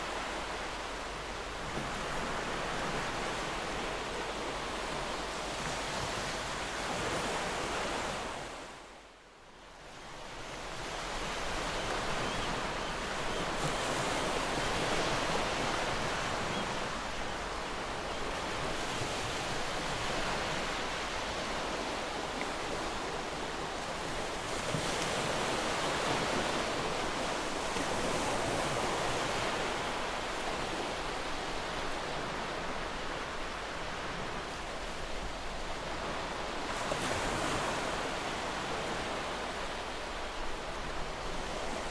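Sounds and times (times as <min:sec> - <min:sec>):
rushing water: 0:00.0 - 0:06.9.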